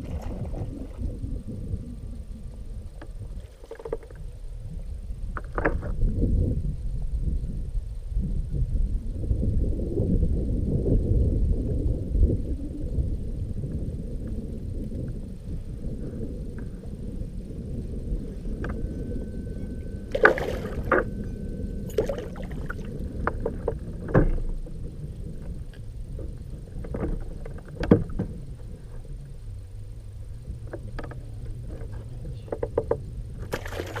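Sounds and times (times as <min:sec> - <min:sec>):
water noise around boat: 0:00.0 - 0:34.0
wind: 0:00.0 - 0:34.0
gear knocking against hull: 0:20.1 - 0:28.8, 0:30.6 - 0:34.0.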